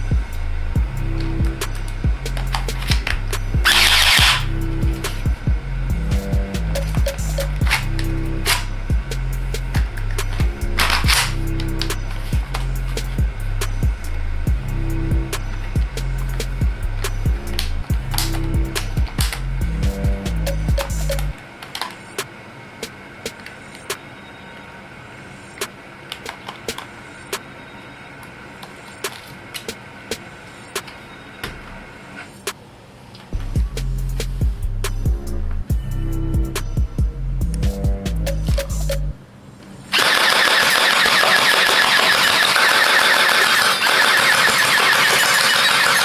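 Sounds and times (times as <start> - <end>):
steady hum: 0.0 - 21.6, 33.3 - 39.9
gel blaster firing rattle: 40.0 - 46.0
toy pistol plastic clicks: 40.0 - 46.0.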